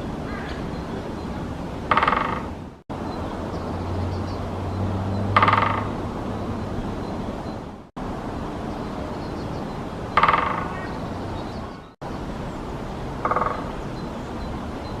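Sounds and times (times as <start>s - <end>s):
woodpecker drumming: 1.9s - 4.4s, 5.2s - 7.6s, 10.1s - 11.4s, 13.2s - 14.0s.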